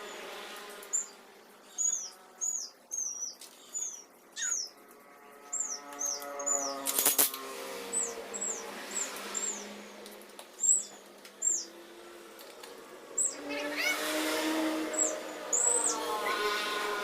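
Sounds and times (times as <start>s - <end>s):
bird chirping: 0.9s - 7.2s, 7.8s - 9.8s, 10.5s - 11.8s, 13.1s - 14.0s, 14.9s - 16.5s.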